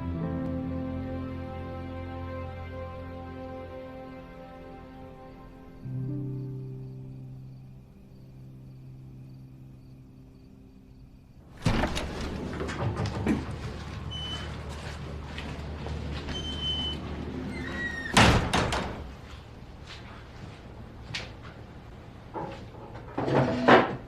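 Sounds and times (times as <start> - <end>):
soft background music: 0.0 - 11.5
room clatter: 11.6 - 24.0.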